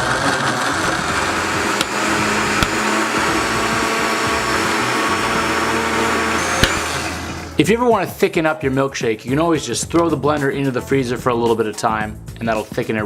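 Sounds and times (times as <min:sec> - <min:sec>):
blender running: 0:00.0 - 0:07.6.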